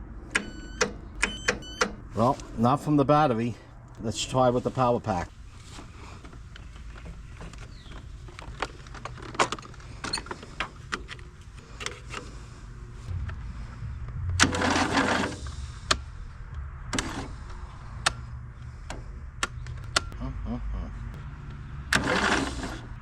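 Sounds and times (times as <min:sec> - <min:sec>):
starter motor buzzing: 0:14.4 - 0:16.0, 0:21.9 - 0:23.0
sharp clicks: 0:15.8 - 0:18.2, 0:18.8 - 0:20.2.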